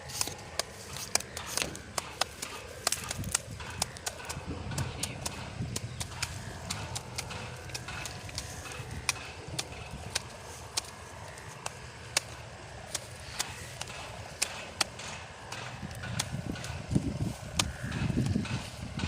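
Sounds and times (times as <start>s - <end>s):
wind rumble on microphone: 3.0s - 11.2s, 15.2s - 19.0s.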